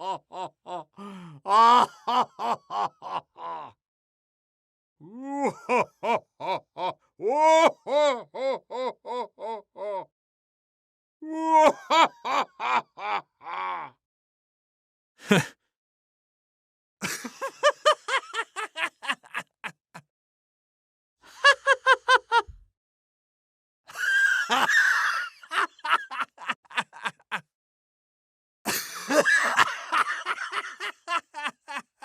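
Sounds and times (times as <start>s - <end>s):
people laughing: 1.5s - 3.7s, 7.9s - 10.0s, 11.6s - 13.8s, 17.0s - 20.0s, 21.3s - 22.5s, 23.9s - 27.4s, 28.7s - 32.0s.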